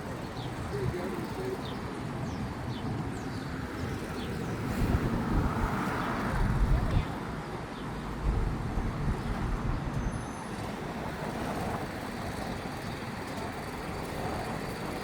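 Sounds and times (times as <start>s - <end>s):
street traffic passing: 0.0s - 15.0s.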